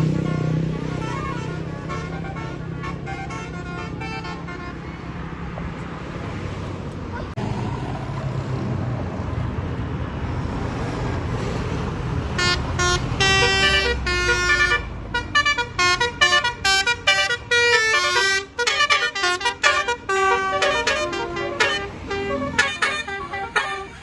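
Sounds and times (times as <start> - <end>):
bus engine rumble: 0.0 - 24.0
musical air horn playing tune: 12.4 - 24.0.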